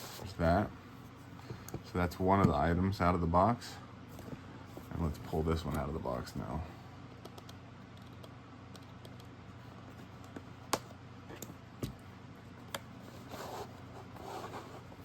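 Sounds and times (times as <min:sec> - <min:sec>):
faint steady hum: 0:00.0 - 0:15.0
box rustling and scraping: 0:13.0 - 0:15.0.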